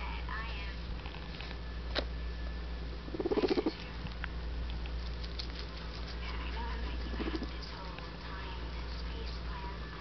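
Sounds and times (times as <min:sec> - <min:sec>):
guinea pig rumbling: 0:02.8 - 0:10.0.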